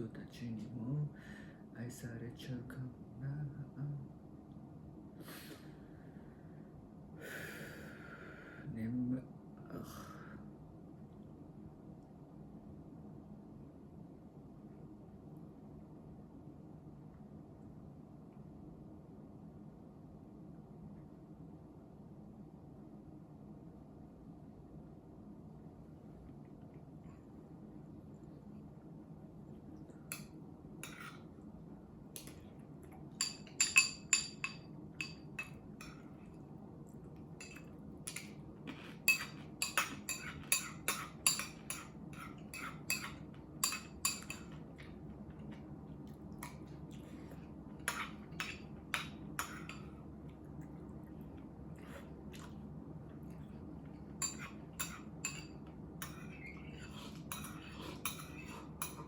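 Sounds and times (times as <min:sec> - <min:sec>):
steady low hum: 0:00.0 - 0:59.0
utensils clinking on ceramic dishes: 0:33.2 - 0:36.0, 0:37.4 - 0:44.6, 0:54.2 - 0:59.0.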